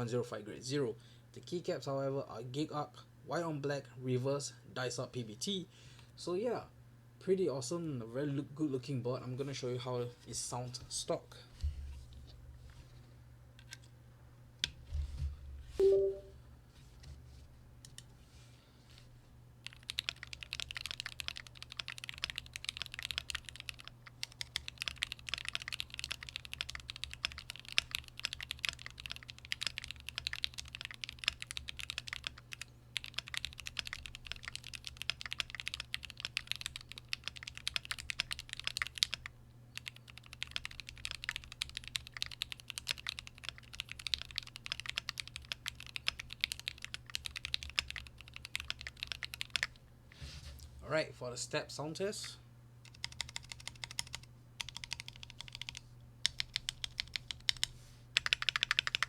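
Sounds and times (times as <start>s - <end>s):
mechanical keyboard typing: 19.6s - 49.8s, 52.9s - 59.0s.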